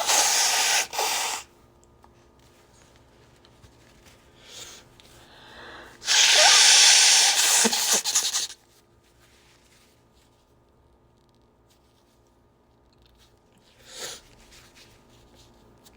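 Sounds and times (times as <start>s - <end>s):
nose blowing into tissue: 0.0s - 1.5s, 6.0s - 8.6s.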